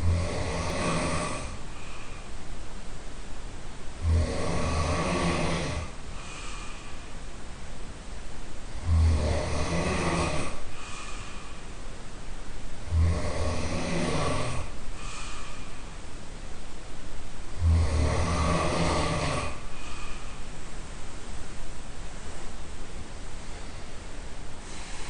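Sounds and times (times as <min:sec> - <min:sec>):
man snoring loudly: 0:00.0 - 0:01.6, 0:04.0 - 0:06.0, 0:08.8 - 0:10.6, 0:12.8 - 0:14.8, 0:17.6 - 0:19.7
quiet breaths: 0:00.0 - 0:25.0.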